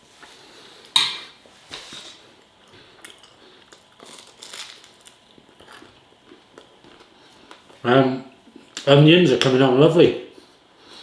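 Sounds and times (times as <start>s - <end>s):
chewing and crunching: 2.4s - 7.8s.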